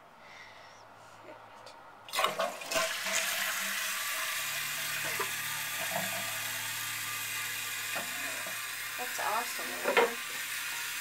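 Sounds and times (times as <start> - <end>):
toilet water rushing: 2.1 - 11.0
toilet flush lever clunk: 5.0 - 6.4, 9.8 - 10.2.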